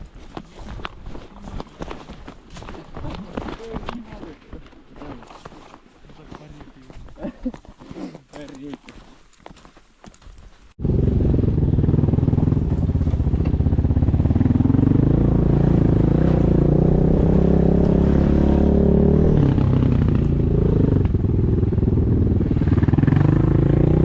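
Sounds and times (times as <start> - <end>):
vehicle engine revving: 10.8 - 24.0.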